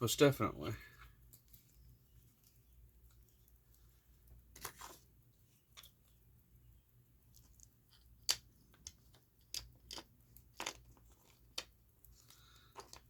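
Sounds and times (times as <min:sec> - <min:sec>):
small tools clicking and tapping: 0:07.0 - 0:13.0.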